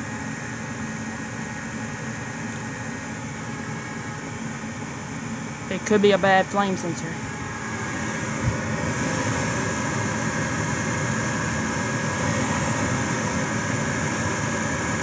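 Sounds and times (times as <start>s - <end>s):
gas furnace rushing: 5.7s - 15.0s.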